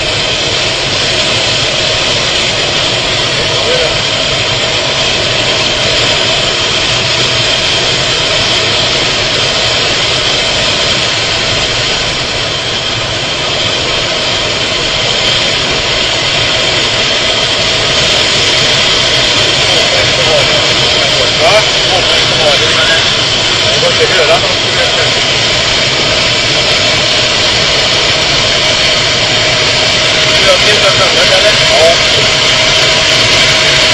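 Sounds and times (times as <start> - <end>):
car driving at high speed: 0.0 - 33.9.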